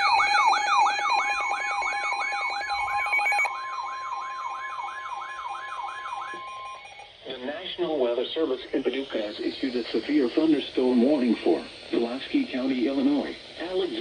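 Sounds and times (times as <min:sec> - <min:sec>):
steady alert tones: 0:00.0 - 0:07.0
electronic alert siren sweeping: 0:00.0 - 0:07.1.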